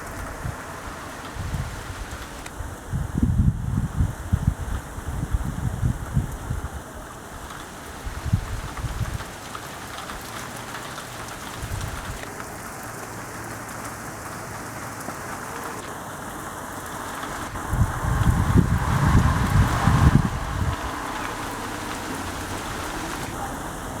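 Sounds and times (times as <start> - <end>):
rain falling: 0.0 - 24.0
low buffeting: 17.2 - 24.0.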